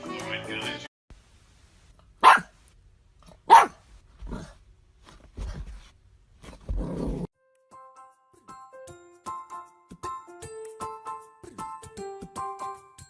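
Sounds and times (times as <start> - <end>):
puppy barking: 2.2 - 2.6, 3.3 - 3.8.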